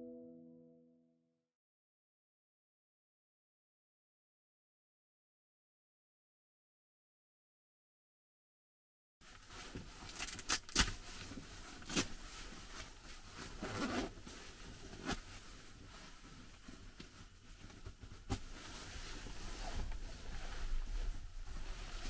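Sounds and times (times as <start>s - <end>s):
soft rustling: 9.2s - 22.0s.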